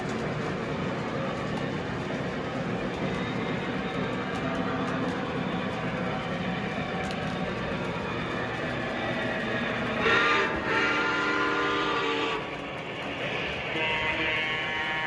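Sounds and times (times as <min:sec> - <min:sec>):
model train motor and wheels hum: 0:00.0 - 0:15.0
train horn: 0:09.8 - 0:15.0.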